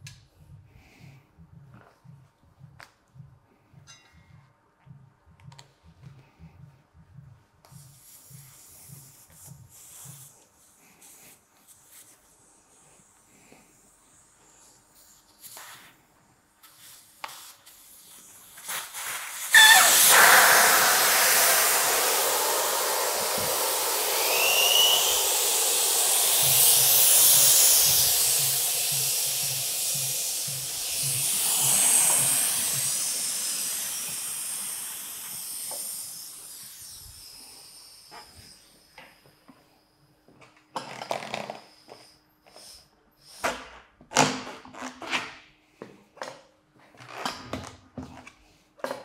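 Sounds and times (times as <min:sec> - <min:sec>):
air hissing from tire valve: 0:16.7 - 0:39.2.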